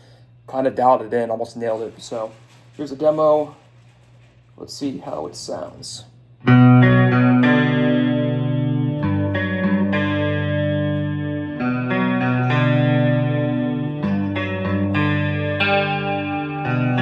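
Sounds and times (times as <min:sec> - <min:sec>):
clean electric guitar chords: 0:06.4 - 0:17.0.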